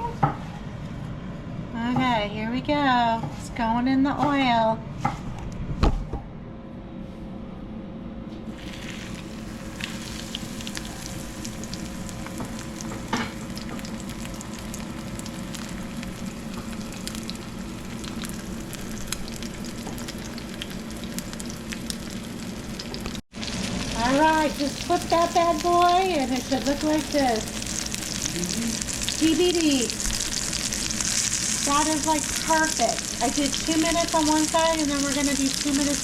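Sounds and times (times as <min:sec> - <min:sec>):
fish searing in hot oil: 0:08.5 - 0:36.0.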